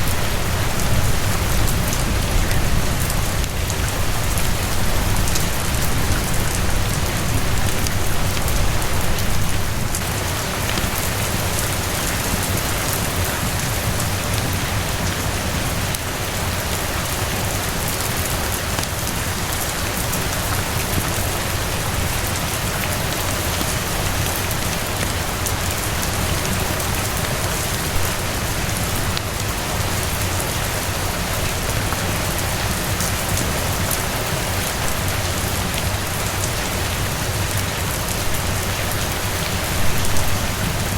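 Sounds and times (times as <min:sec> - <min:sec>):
steady rain hiss: 0:00.0 - 0:40.9.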